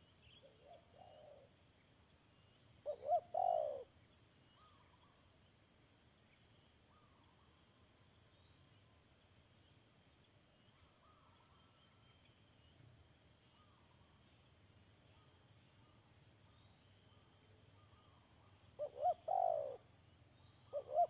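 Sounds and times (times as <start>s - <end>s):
dove cooing: 0.4s - 1.5s, 2.8s - 3.9s, 18.8s - 19.8s, 20.7s - 21.0s
insect trilling: 2.8s - 3.9s, 18.1s - 20.0s.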